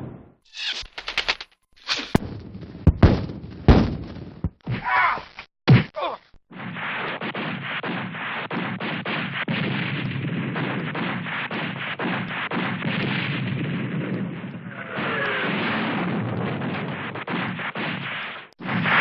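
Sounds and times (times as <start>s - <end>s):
gunfire and blasts: 2.0s - 4.5s, 6.5s - 19.0s.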